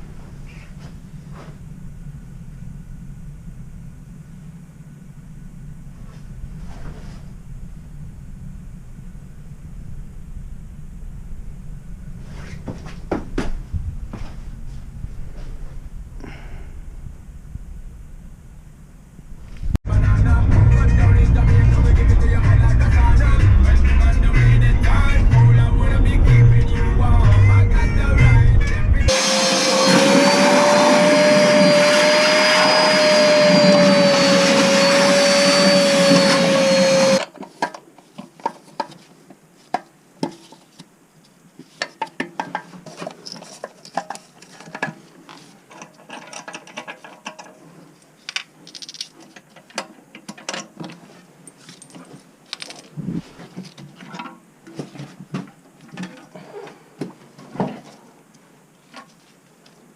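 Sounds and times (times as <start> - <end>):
electric motor whining: 29.1 - 37.3
clicks and knocks of tools: 37.2 - 39.0, 41.8 - 52.9.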